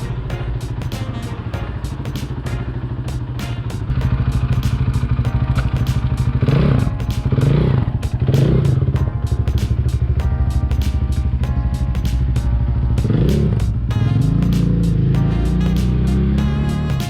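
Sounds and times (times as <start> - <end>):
dirt bike engine revving: 0.1 - 9.0, 13.0 - 17.0.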